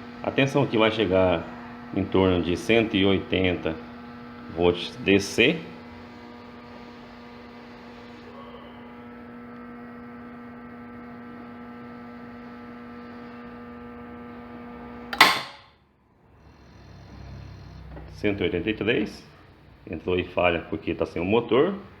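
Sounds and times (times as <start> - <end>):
solenoid humming: 0.0 - 21.2
solenoid clack: 15.1 - 15.7.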